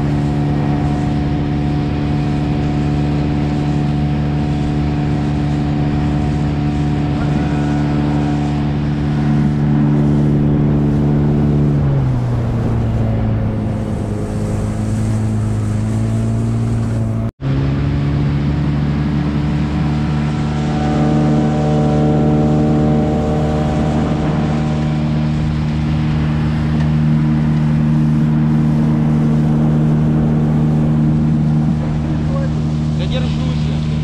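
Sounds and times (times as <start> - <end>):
outboard motor running: 0.0 - 34.0.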